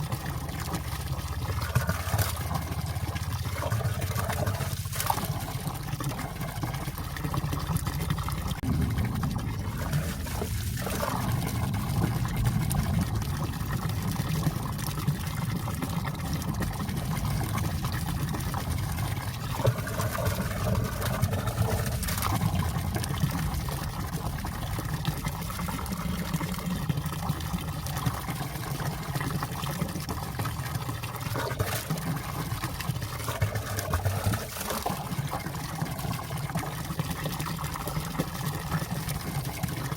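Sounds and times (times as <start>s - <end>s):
stream running and trickling: 0.0s - 39.9s
deep low rumble: 8.4s - 14.8s.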